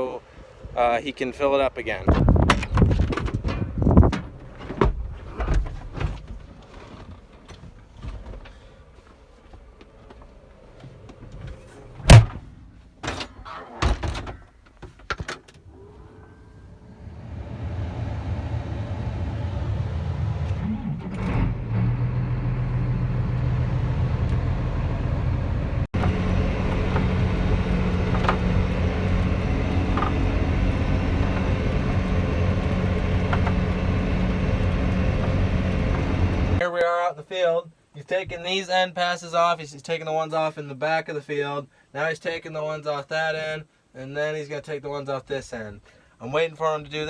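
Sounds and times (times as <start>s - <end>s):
sharp knocks and clunks: 11.4s - 15.5s, 26.0s - 34.4s
tractor engine running: 17.0s - 36.6s.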